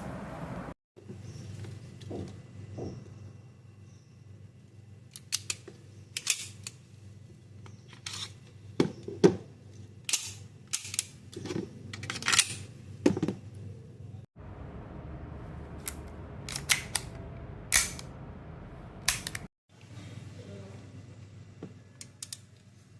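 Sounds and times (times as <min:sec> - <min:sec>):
sharp clicks and snaps: 0:15.8 - 0:18.1, 0:19.0 - 0:19.5.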